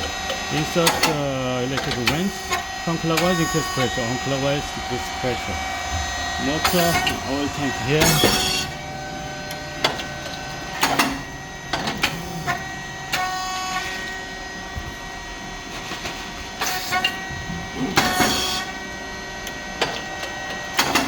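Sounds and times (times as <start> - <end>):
machine moulds clicking and knocking: 0.0 - 4.0, 5.9 - 8.7, 9.8 - 13.9, 19.4 - 21.0
machine motor and fan hum: 0.0 - 21.0.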